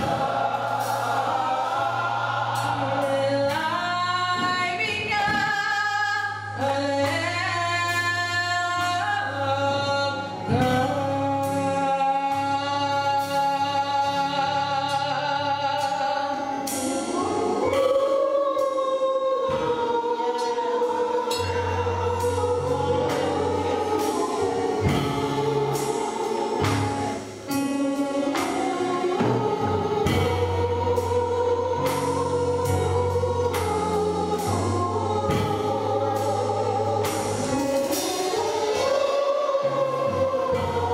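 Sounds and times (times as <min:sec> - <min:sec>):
band bass line and beat: 0:00.0 - 0:05.8, 0:21.3 - 0:39.0
gospel choir singing: 0:00.0 - 0:40.9.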